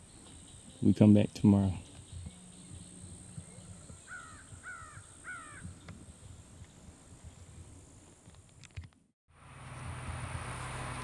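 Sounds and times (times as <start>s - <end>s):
faint crow calling: 3.7s - 5.8s.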